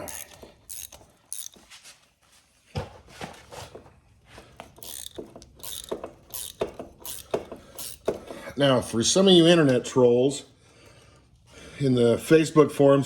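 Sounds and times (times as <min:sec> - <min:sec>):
metallic clicks and clanks of chain: 0:00.0 - 0:01.6, 0:04.8 - 0:08.1.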